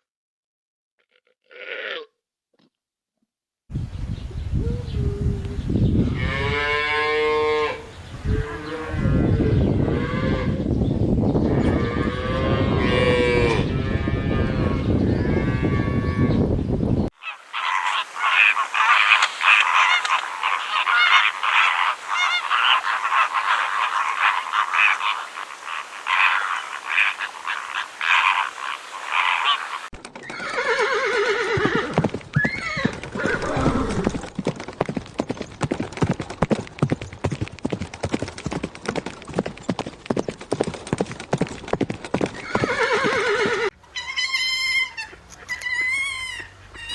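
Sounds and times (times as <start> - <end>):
cattle mooing: 6.2 - 9.3
high-pitched chattering animal calls: 17.2 - 29.9, 43.8 - 46.9
hooves clip-clopping: 18.4 - 24.5, 31.6 - 33.4, 34.1 - 46.9
horse whinnying: 19.0 - 34.3, 42.4 - 46.9.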